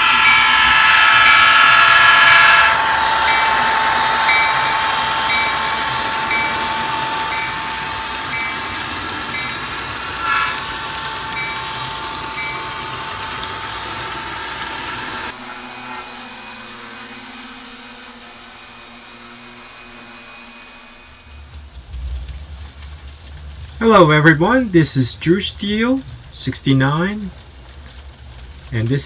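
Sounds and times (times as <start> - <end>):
low hum: 0.0 - 15.3, 21.2 - 29.0
train bell dinging: 0.0 - 15.3, 21.2 - 29.0
train rumbling: 0.0 - 15.3, 21.1 - 29.0.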